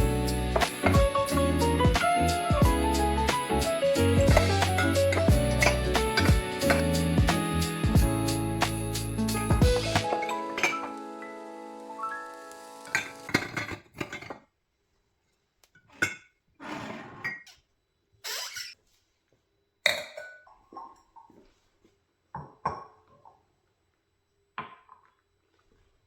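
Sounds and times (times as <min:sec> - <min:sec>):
music with held notes: 0:00.0 - 0:13.3
hard objects clinking and knocking: 0:04.3 - 0:07.1.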